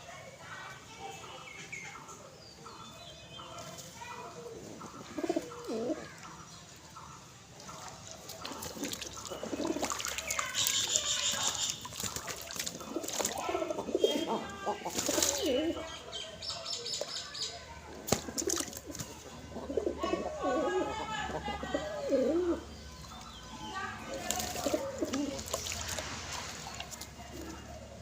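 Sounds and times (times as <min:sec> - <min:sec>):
bird calls: 0:01.4 - 0:17.6
birds chirping and fluttering: 0:01.5 - 0:28.0.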